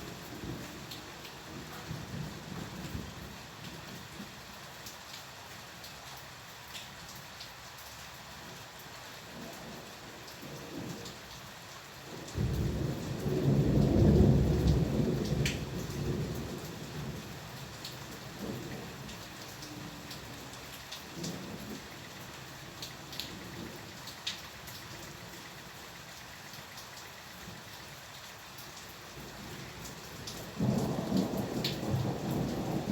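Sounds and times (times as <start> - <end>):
steady rain: 0.0 - 32.9
thunder rumbling: 12.4 - 17.3, 30.5 - 32.9.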